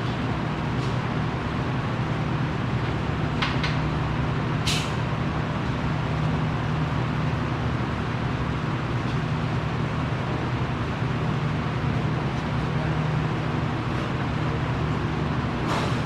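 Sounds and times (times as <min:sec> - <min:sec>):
shop machinery humming: 0:00.0 - 0:16.0
brief sharp hiss: 0:04.7 - 0:05.0.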